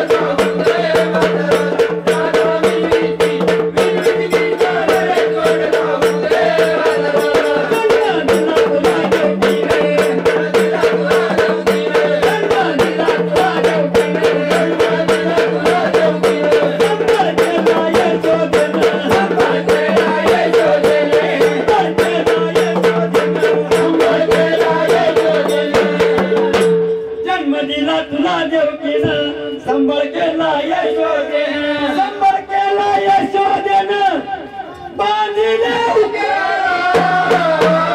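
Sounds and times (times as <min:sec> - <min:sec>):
jingling percussion: 0:00.0 - 0:27.5, 0:36.9 - 0:37.9.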